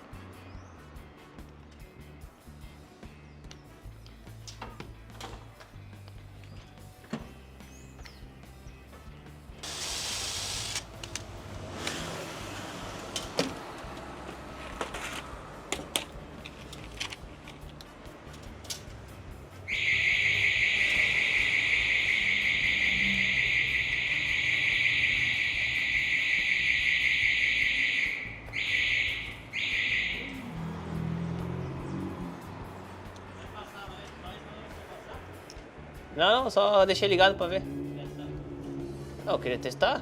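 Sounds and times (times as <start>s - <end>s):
alarm siren: 19.7s - 30.7s.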